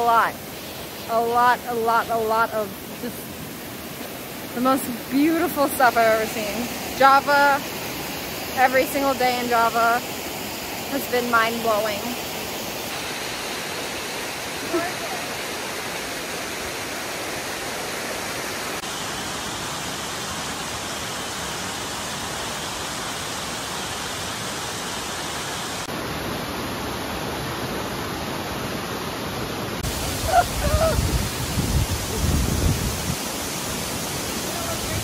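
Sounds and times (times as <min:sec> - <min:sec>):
waterfall rushing: 0:00.0 - 0:35.0
low gusty rumbling: 0:29.8 - 0:33.2.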